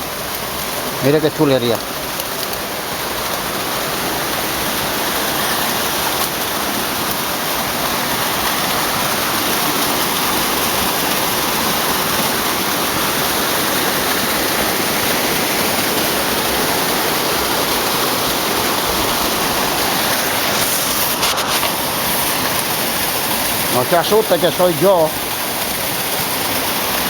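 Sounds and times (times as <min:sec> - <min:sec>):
waterfall rushing: 0:00.0 - 0:27.0.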